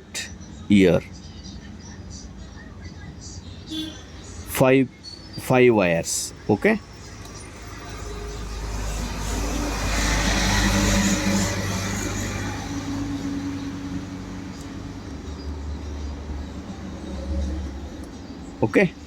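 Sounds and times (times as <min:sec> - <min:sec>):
vehicle passing with low rumble: 0:06.8 - 0:19.0.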